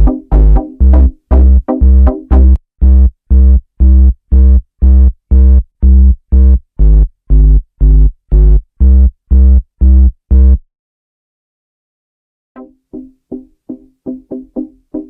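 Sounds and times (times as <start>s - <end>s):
pulsed synthesizer chords: 0.0s - 10.6s.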